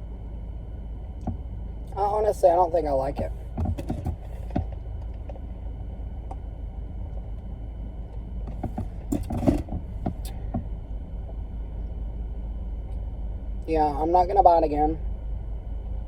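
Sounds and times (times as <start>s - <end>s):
car idling rumble: 0.0s - 16.0s
handling noise: 3.2s - 5.4s, 8.1s - 10.7s.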